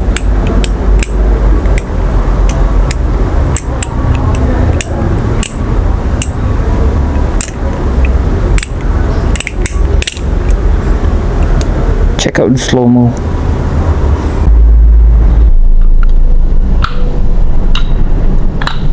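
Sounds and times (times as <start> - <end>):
steady low rumble: 0.0 - 18.9
butterfly knife handles clicking: 0.1 - 5.6, 7.1 - 10.6.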